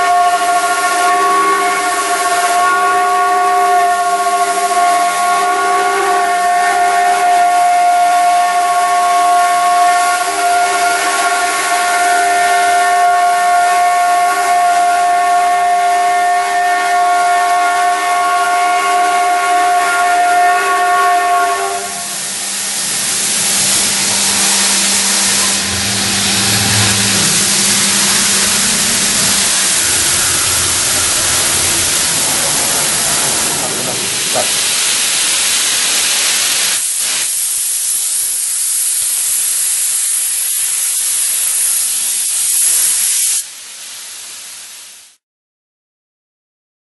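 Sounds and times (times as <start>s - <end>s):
steady hiss: 0.0s - 45.2s
router spindle whine: 22.1s - 34.5s.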